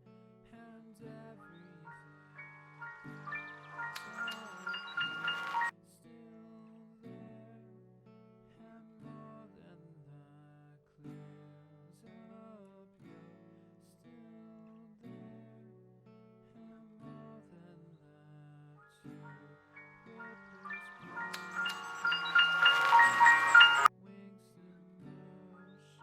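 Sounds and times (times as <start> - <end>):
soft plucked background music: 1.4 - 5.7, 19.1 - 23.9.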